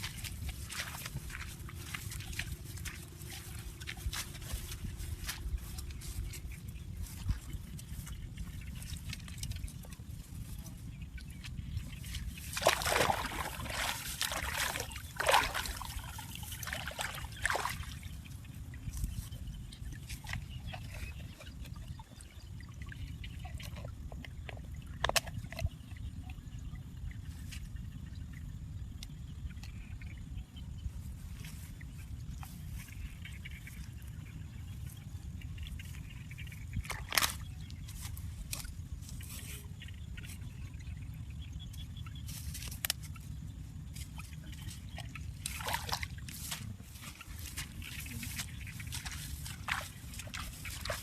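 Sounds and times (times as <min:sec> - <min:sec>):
steady low rumble: 0:00.0 - 0:51.0
water trickling and splashing: 0:00.0 - 0:51.0
water splashes: 0:11.2 - 0:19.0, 0:44.0 - 0:51.0.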